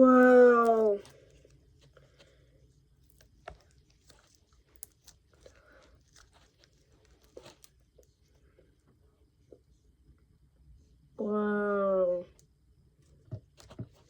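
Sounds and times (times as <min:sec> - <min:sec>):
squeezed putty crackling and popping: 0:03.0 - 0:08.0.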